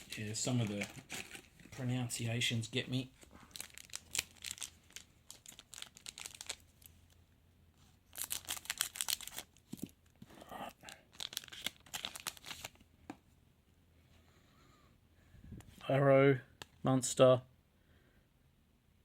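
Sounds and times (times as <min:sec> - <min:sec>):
card wrappers tearing and crinkling: 0:00.0 - 0:01.7, 0:03.4 - 0:06.9, 0:08.0 - 0:10.0, 0:10.8 - 0:12.8.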